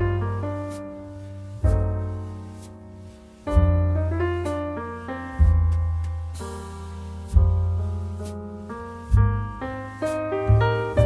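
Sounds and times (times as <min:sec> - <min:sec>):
piano-like keyboard notes: 0:00.0 - 0:11.0
deep bass note: 0:01.4 - 0:02.4, 0:03.5 - 0:04.5, 0:05.4 - 0:08.2, 0:09.0 - 0:11.0.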